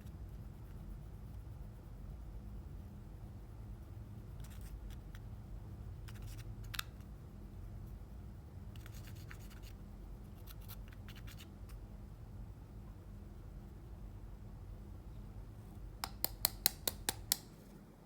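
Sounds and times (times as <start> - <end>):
low steady hum: 0.0 - 18.0
slime sticky clicks: 16.0 - 17.5.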